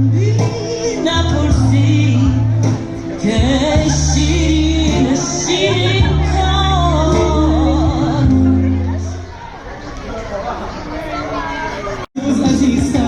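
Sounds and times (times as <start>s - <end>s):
person singing: 0.0s - 9.1s, 12.2s - 13.0s
long held bass notes: 0.0s - 9.2s.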